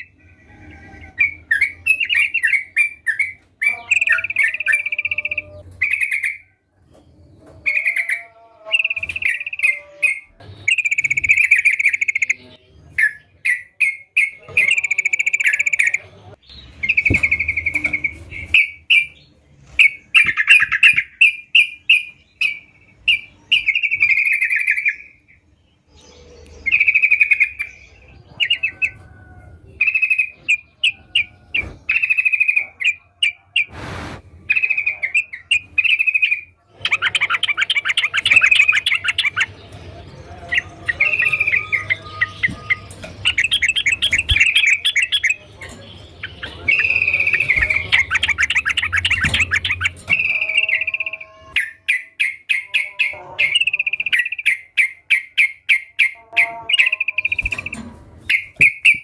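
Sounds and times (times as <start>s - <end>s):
burst of noise: 33.7s - 34.4s
bulbul singing chattering notes: 34.5s - 59.0s.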